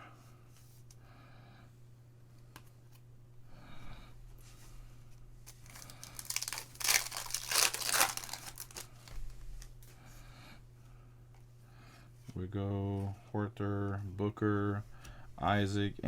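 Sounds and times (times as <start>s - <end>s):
foil pack tearing and crackling: 5.5s - 9.1s
foil wrapper rustling: 5.5s - 9.3s.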